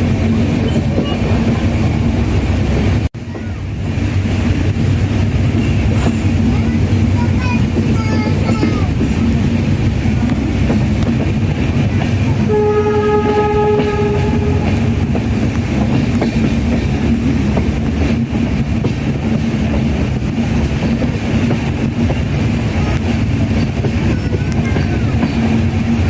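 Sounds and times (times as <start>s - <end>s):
train wheels rumbling on track: 0.0s - 26.0s
train horn: 12.4s - 15.1s.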